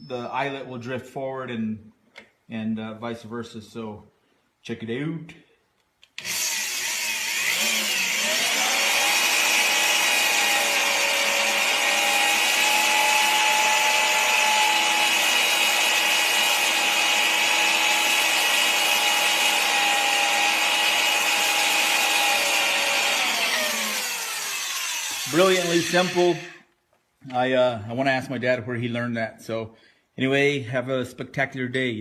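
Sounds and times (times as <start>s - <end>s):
power drill motor whine: 6.2s - 26.6s
drill bit cutting wood: 6.2s - 26.7s.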